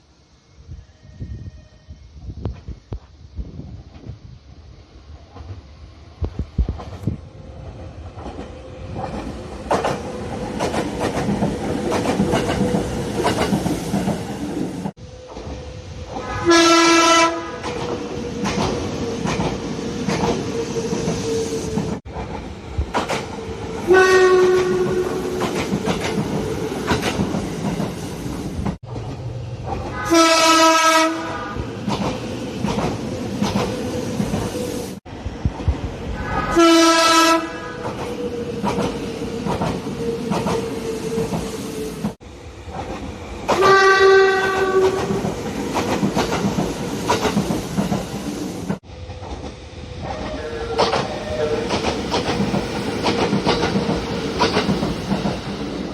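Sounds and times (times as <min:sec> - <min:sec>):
train running hum: 0:00.0 - 0:55.9
wheels clacking over rail joints: 0:08.1 - 0:14.6, 0:50.2 - 0:55.7
train horn blasts: 0:16.2 - 0:17.6, 0:23.9 - 0:25.2, 0:29.9 - 0:31.7, 0:36.2 - 0:37.9, 0:43.6 - 0:45.2.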